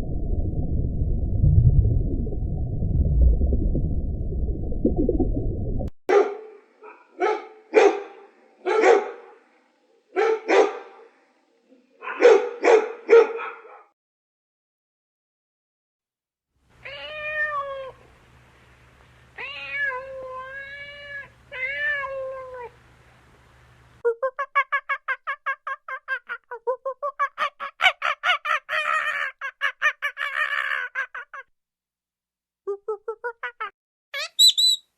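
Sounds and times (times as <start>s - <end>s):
dog barking: 6.1s - 9.4s, 10.1s - 11.1s, 12.0s - 13.9s.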